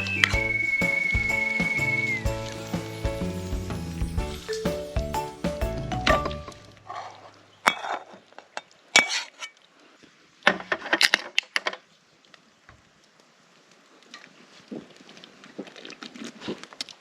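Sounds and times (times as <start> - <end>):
background music: 0.0 - 6.9.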